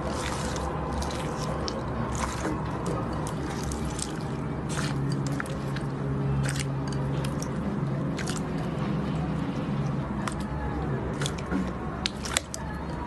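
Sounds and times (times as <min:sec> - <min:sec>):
slime squished by hand: 0:00.0 - 0:13.0.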